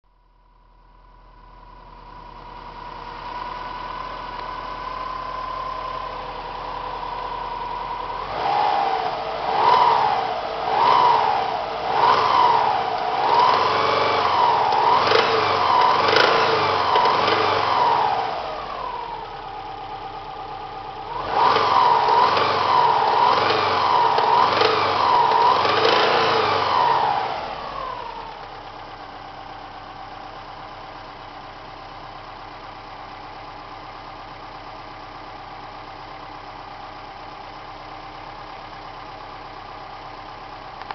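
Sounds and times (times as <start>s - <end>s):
car engine idling: 0.1s - 40.9s
car engine revving: 2.4s - 19.3s, 21.0s - 28.4s.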